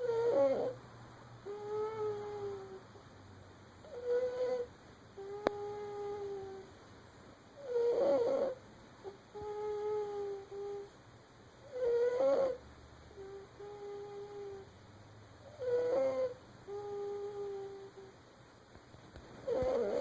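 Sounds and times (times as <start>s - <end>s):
baby snoring: 0.0s - 0.8s, 1.5s - 2.8s, 3.9s - 6.6s, 7.6s - 10.9s, 11.7s - 12.6s, 13.2s - 14.7s, 15.4s - 18.1s, 19.4s - 20.0s
soft humming tone: 3.8s - 6.7s, 15.5s - 18.2s.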